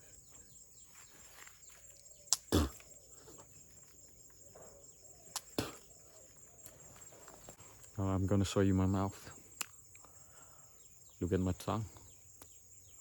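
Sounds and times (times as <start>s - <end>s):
crickets chirping: 0.0s - 13.0s
person spitting: 2.3s - 3.4s, 5.4s - 5.8s.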